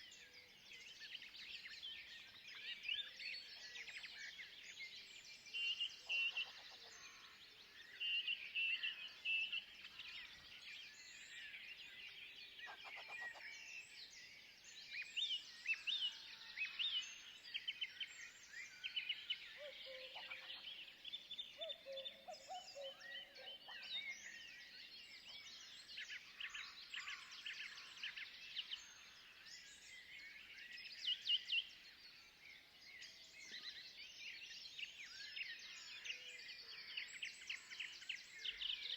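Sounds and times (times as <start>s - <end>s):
birds chirping and trilling: 1.2s - 38.9s.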